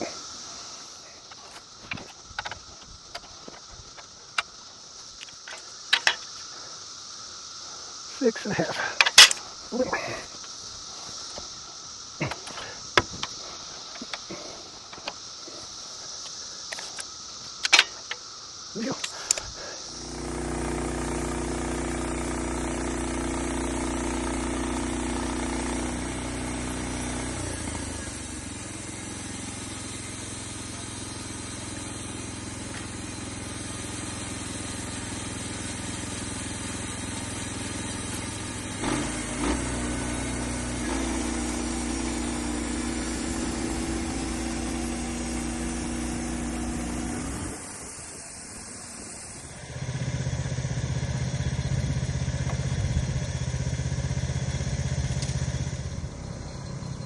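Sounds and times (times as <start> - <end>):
small gas engine running: 5.5 - 15.9, 18.7 - 57.0
sharp clicks: 18.9 - 19.6.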